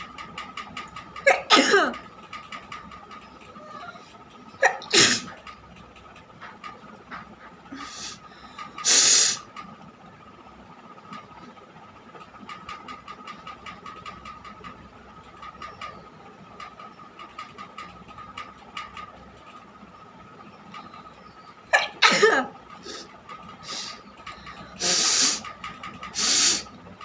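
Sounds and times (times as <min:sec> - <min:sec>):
scattered clicks and rustles: 0:00.0 - 0:27.0
thin steady hum: 0:00.0 - 0:27.0.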